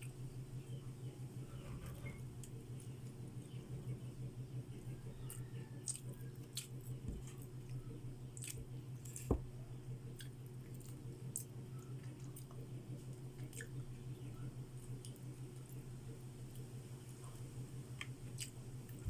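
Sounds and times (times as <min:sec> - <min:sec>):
steady low hum: 0:00.0 - 0:19.0
wet chewing smacks: 0:05.2 - 0:07.8, 0:08.4 - 0:09.3, 0:10.1 - 0:13.8, 0:18.0 - 0:19.0.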